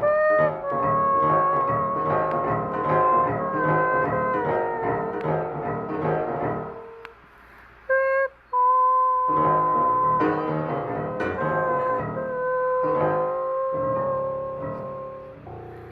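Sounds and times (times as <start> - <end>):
instrumental keyboard music: 0.0 - 7.1, 8.0 - 15.9
held tone: 7.9 - 15.6.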